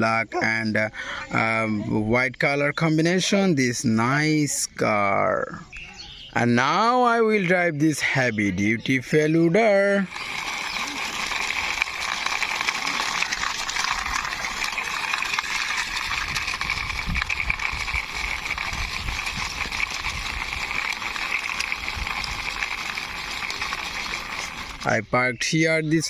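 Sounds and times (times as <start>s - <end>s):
plastic toy wheels rolling on concrete: 6.7s - 26.0s.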